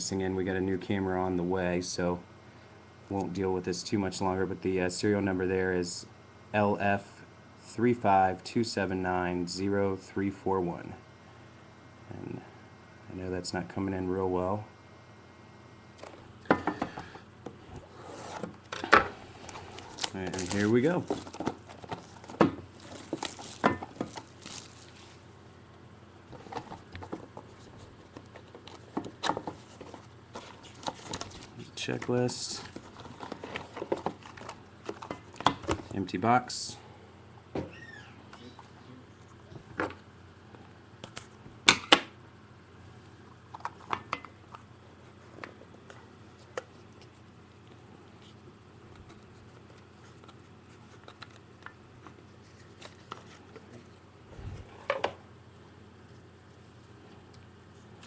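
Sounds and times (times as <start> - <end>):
cardboard and wrapper rustling: 19.3 - 25.2, 26.3 - 31.6.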